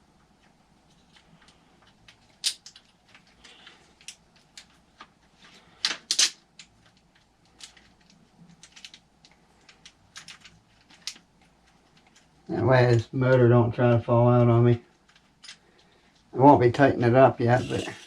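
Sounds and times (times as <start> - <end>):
small parts clicking and tapping: 0.2 - 12.3
parts clattering: 17.5 - 18.0.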